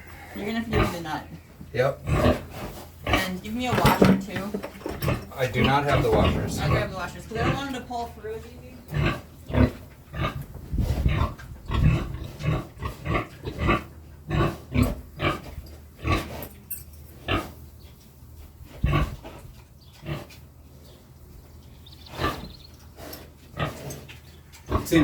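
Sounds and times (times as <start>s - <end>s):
pig grunting: 2.0s - 3.3s, 4.8s - 8.2s, 8.8s - 10.4s, 11.0s - 16.5s, 18.8s - 19.3s, 22.1s - 25.0s.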